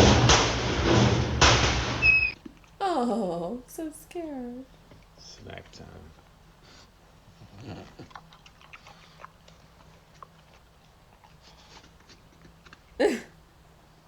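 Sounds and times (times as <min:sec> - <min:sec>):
dog crunching a hard snack: 0:07.3 - 0:13.0.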